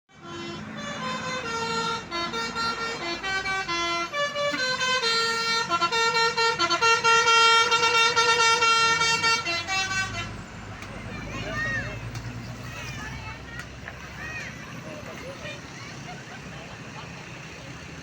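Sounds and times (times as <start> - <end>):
bus horn playing a tune: 0.1 - 13.4.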